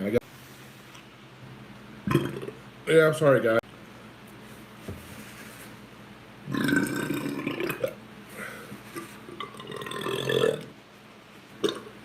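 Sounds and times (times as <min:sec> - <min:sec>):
man belching loudly: 0:02.1 - 0:02.6, 0:06.5 - 0:08.0, 0:09.4 - 0:10.7, 0:11.6 - 0:11.9.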